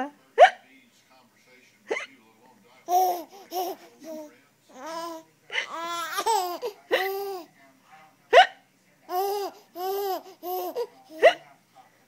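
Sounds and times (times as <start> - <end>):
woman hiccuping: 0.4 - 0.6
baby laughing: 2.9 - 7.5, 9.1 - 11.4.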